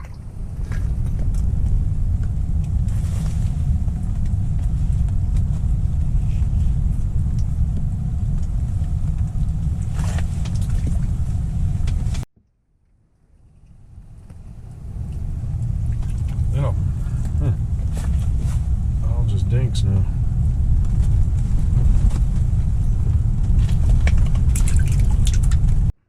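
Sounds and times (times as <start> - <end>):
wind buffeting microphone: 0.0 - 12.2, 13.8 - 25.9.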